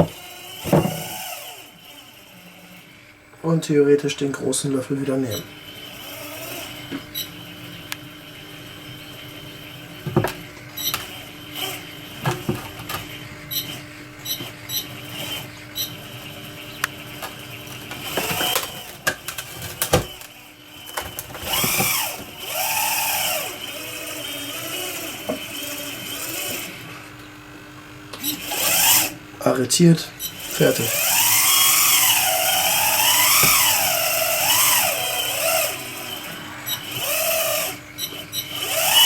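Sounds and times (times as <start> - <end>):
hydraulic pump humming: 0.0 - 39.0
sharp knocks and clicks: 10.0 - 11.1.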